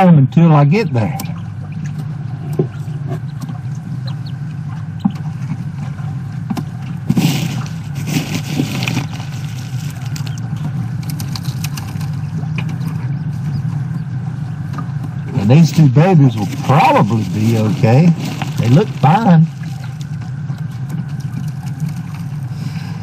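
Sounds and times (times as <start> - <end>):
low hum: 0.0 - 23.0
rustle: 7.1 - 10.4, 16.3 - 20.2.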